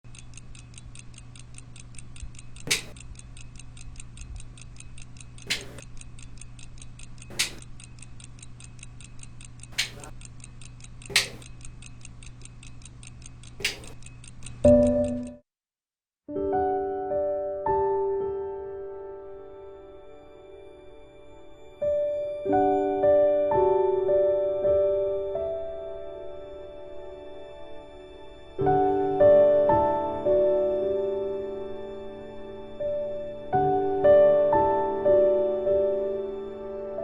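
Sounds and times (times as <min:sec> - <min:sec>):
sharp clicks: 0:00.0 - 0:15.4
clock ticking fast: 0:00.1 - 0:15.4.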